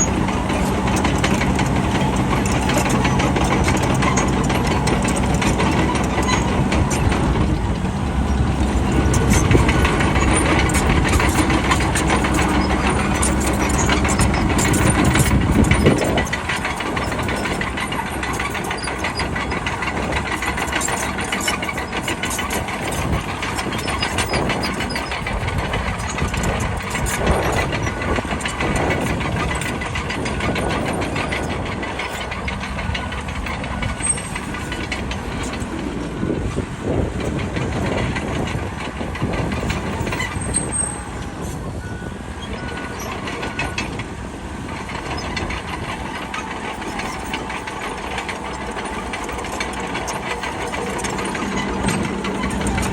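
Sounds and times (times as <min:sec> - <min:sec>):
bulldozer diesel engine running: 0:00.0 - 0:52.9
steady rattling clatter: 0:00.0 - 0:52.9.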